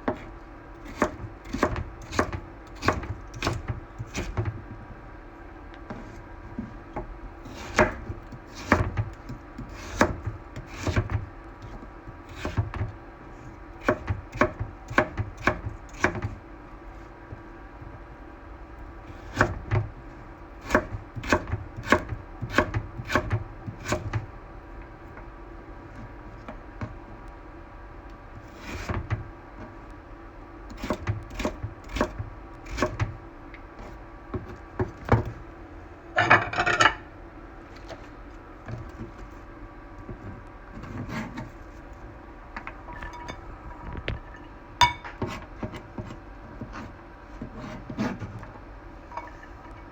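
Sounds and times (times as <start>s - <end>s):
steady low hum: 0.0s - 49.9s
knife chopping on wooden board: 0.9s - 4.5s, 7.5s - 11.2s, 12.2s - 12.9s, 13.8s - 16.3s, 20.6s - 24.2s.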